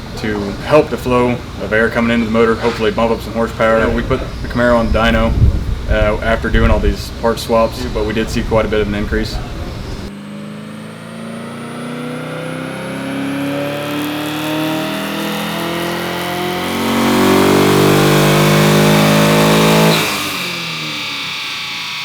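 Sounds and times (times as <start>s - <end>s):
car engine revving on dyno: 8.6s - 22.0s.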